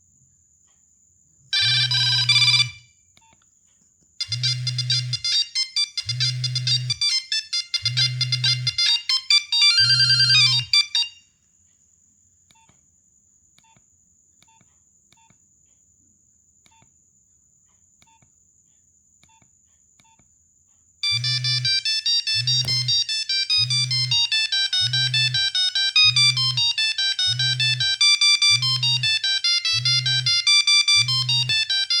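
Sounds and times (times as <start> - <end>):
monophonic beeping ringtone: 1.6 - 2.8, 4.2 - 11.2, 21.0 - 32.0.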